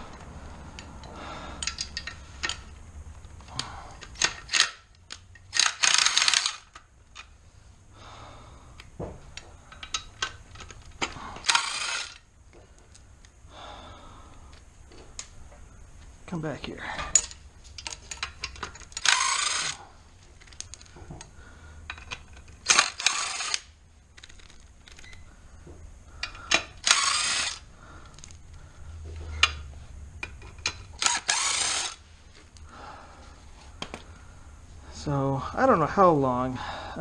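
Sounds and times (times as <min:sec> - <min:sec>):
ratchet wrench clicking: 0:04.0 - 0:06.8, 0:09.7 - 0:12.3, 0:17.1 - 0:19.8, 0:21.9 - 0:25.2, 0:26.2 - 0:28.4, 0:30.2 - 0:32.0.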